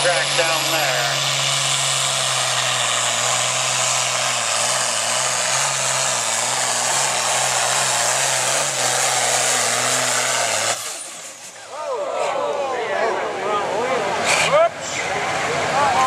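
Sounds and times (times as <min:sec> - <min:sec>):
exhaust and turbo rush: 0:00.0 - 0:12.4
diesel engine under load: 0:00.0 - 0:16.0.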